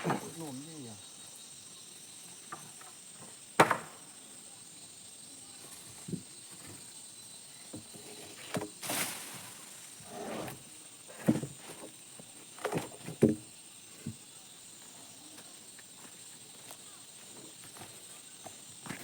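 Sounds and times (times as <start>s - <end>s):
high-pitched insect chirr: 0.0s - 19.0s.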